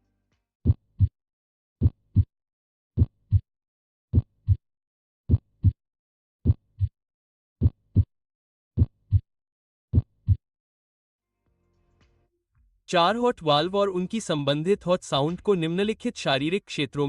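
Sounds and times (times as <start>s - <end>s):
heartbeat thuds: 0.6s - 1.2s, 1.8s - 2.3s, 3.0s - 3.5s, 4.1s - 4.6s, 5.3s - 5.8s, 6.4s - 7.0s, 7.6s - 8.1s, 8.8s - 9.3s, 9.9s - 10.4s.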